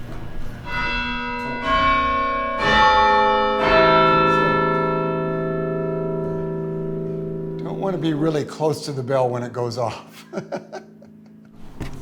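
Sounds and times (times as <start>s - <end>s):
church bells ringing: 0.0s - 9.3s.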